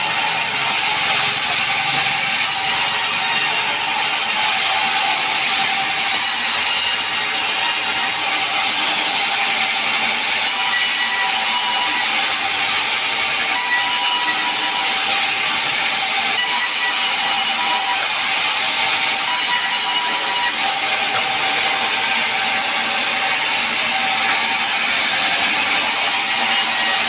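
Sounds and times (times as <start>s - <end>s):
sawmill saw and machinery running: 0.0s - 27.0s.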